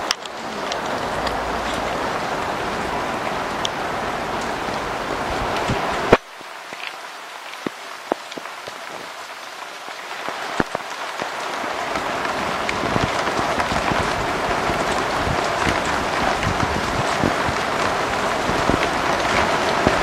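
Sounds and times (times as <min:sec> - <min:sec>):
rain hiss: 0:00.0 - 0:20.0
raindrops ticking close by: 0:00.0 - 0:20.0.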